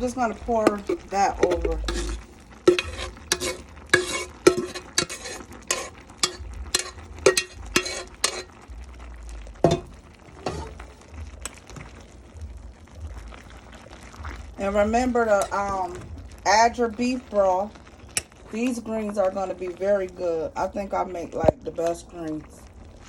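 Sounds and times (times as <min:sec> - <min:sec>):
light sizzle: 0:00.0 - 0:23.0
spoon scraping against a pot: 0:00.6 - 0:08.6, 0:09.6 - 0:10.9.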